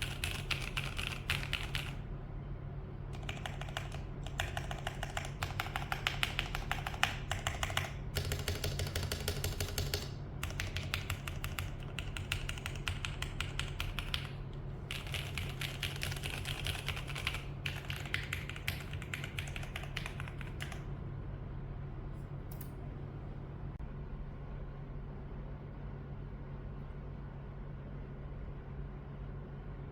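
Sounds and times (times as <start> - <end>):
mechanical keyboard typing: 0.0 - 2.0, 3.1 - 20.9
steady low hum: 0.0 - 29.9.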